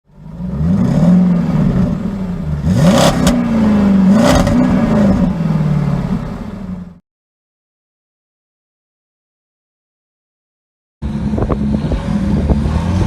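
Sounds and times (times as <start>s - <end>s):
rally car engine revving: 0.1s - 7.0s, 11.0s - 13.0s.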